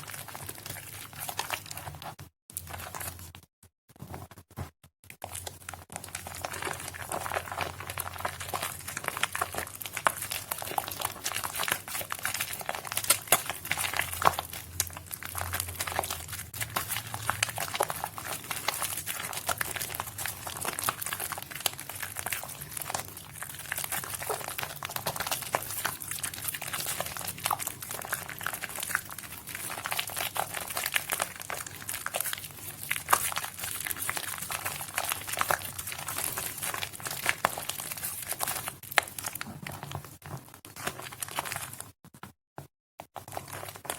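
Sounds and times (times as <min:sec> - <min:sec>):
wet soap squished by hand: 0:05.2 - 0:41.9.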